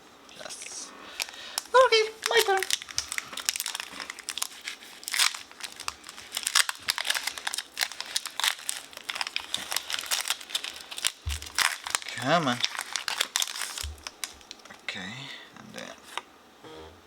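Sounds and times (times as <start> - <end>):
foil wrapper crinkling: 1.1 - 14.8.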